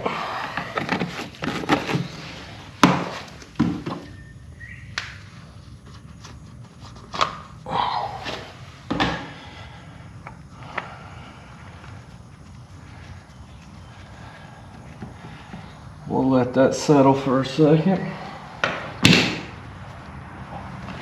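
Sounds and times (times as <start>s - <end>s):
objects knocking and clattering: 2.8s - 4.1s.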